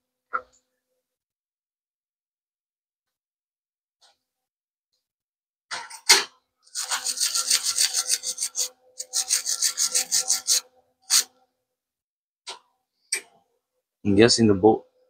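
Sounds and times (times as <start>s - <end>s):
rasping strokes on metal: 6.7s - 11.4s.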